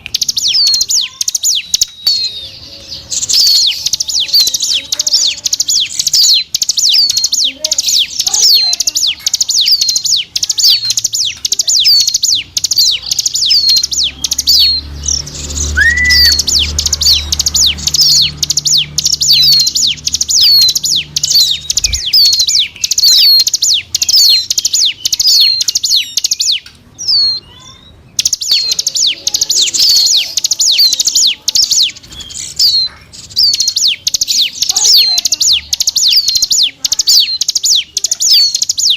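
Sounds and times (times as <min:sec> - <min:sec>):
bird high sharp chirps: 0:00.0 - 0:38.9.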